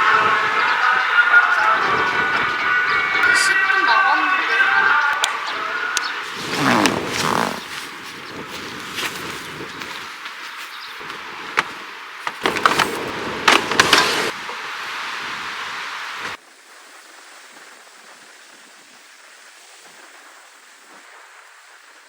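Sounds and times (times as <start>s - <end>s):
surf: 0.0s - 11.8s
wind: 0.0s - 22.0s
steady hiss: 5.6s - 17.8s.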